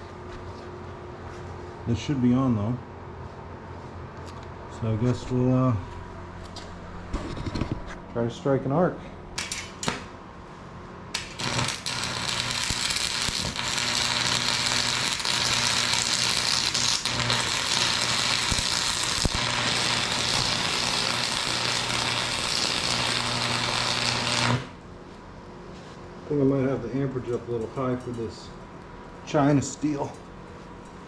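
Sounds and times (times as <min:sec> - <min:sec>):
low electrical hum: 0:00.0 - 0:31.0
welding arc crackling: 0:09.4 - 0:10.1, 0:11.1 - 0:24.8.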